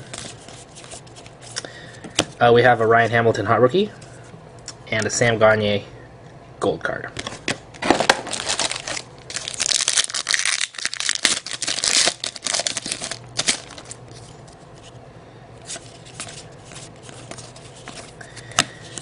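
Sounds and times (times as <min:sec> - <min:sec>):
wrapper tearing and crinkling: 0:07.8 - 0:14.0.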